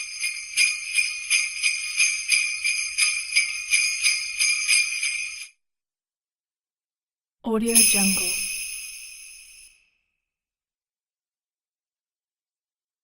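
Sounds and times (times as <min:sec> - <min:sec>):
jingle bells shaken: 0:00.0 - 0:05.5, 0:07.5 - 0:09.7.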